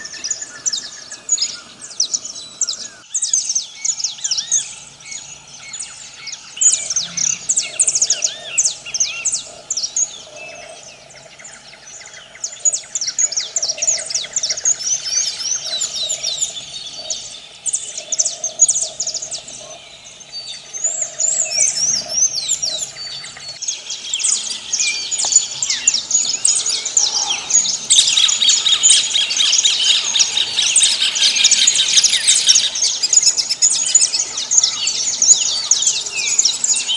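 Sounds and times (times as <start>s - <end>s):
birds chirping and calling: 0.0s - 36.9s.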